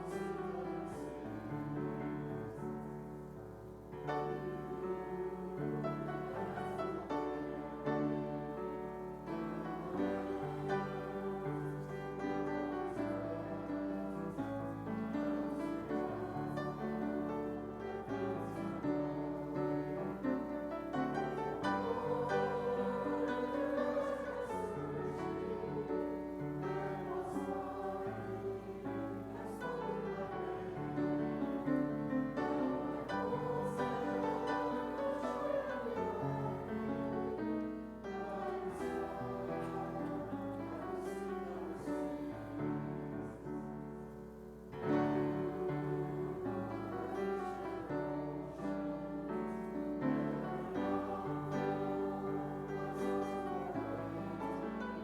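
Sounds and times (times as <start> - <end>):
group singing a hymn: 0.0 - 55.0
piano accompaniment: 0.0 - 55.0.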